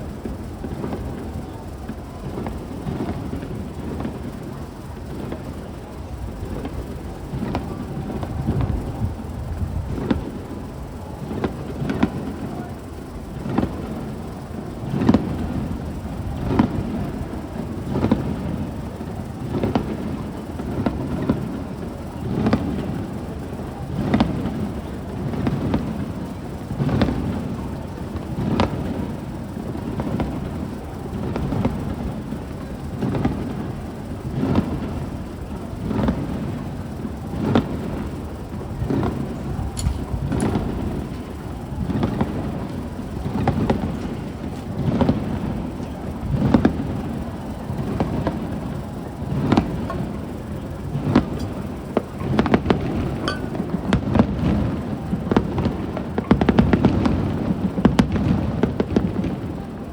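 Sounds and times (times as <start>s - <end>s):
fireworks booming: 0.1s - 12.6s, 37.3s - 45.7s, 46.3s - 59.6s.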